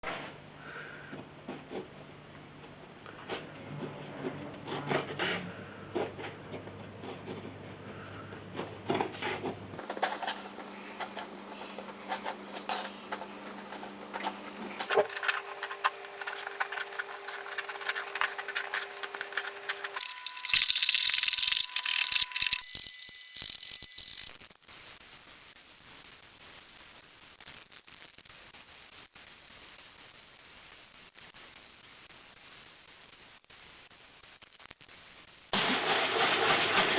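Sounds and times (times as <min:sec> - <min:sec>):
paper scratching and rasping: 0:08.6 - 0:24.3.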